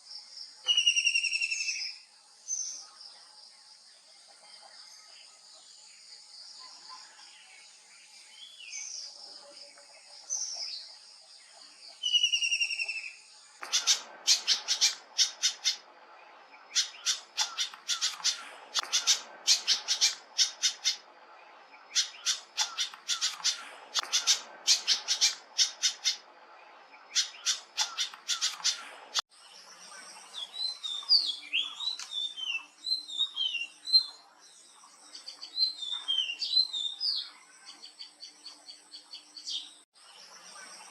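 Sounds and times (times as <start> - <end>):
twittering bird chirps: 0.4 - 3.3, 6.2 - 40.9
whistled bird notes: 0.6 - 2.8, 12.0 - 15.8, 30.4 - 34.2
harsh rattling bird chatters: 13.6 - 15.8, 16.7 - 21.0, 21.9 - 26.2, 27.1 - 29.2.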